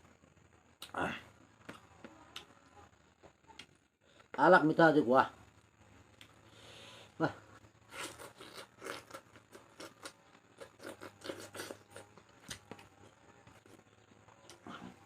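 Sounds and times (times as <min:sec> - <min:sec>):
chewing with mouth smacks: 0:07.9 - 0:13.8.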